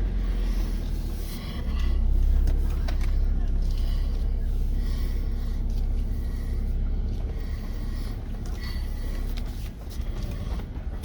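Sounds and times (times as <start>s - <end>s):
engine running with low rumble: 0.0s - 11.0s.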